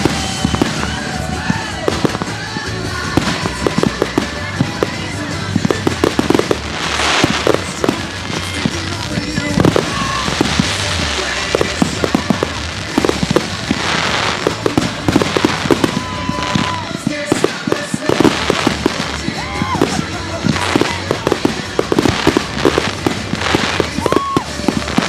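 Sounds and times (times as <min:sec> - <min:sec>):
background music: 0:00.0 - 0:25.0
fireworks bangs and pops: 0:00.0 - 0:25.0
fireworks crackling: 0:00.0 - 0:25.0.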